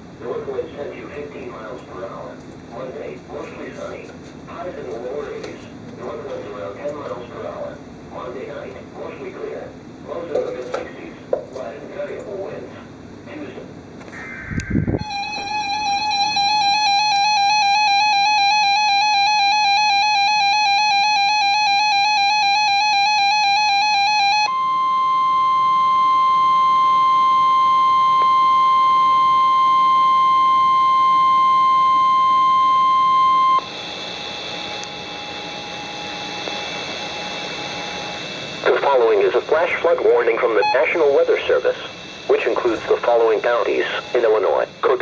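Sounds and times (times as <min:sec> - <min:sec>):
radio hiss: 0:02.8 - 0:15.0, 0:35.6 - 0:45.0
warbling digital data screech: 0:14.2 - 0:24.5, 0:31.2 - 0:45.0
steady warning alarm tone: 0:14.5 - 0:45.0.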